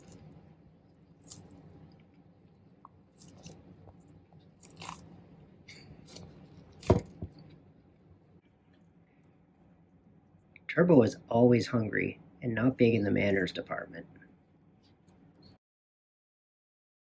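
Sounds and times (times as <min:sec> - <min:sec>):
tortoise crunching food: 0:00.0 - 0:08.4.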